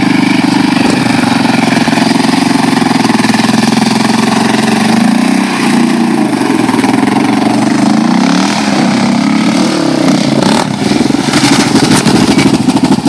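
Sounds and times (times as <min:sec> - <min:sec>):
atv engine idling: 0:00.0 - 0:13.0.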